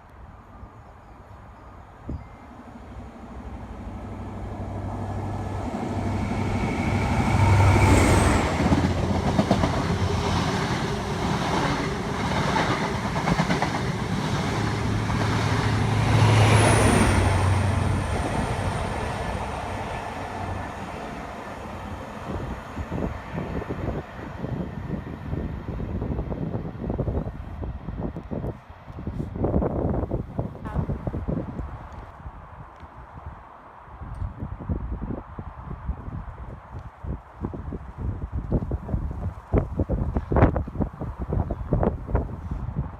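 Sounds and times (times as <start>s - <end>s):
diesel train engine passing: 0.3s - 28.1s.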